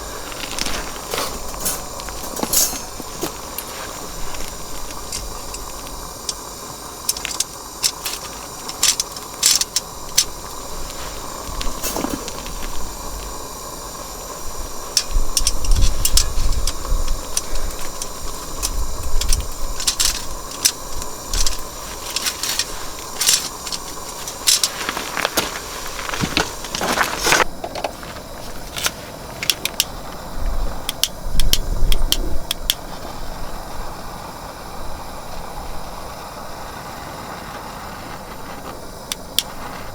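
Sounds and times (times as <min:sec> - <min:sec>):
small hard objects clinking: 0:00.0 - 0:13.3, 0:14.9 - 0:27.9
wind gusting on microphone: 0:00.0 - 0:27.6, 0:29.8 - 0:39.9
steady hiss: 0:00.0 - 0:39.9.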